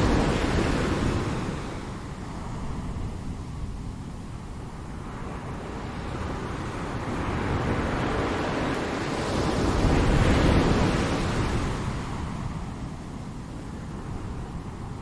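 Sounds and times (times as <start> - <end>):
wave breaking and washing out: 0.0 - 3.0
low rumble of sea: 0.0 - 15.0.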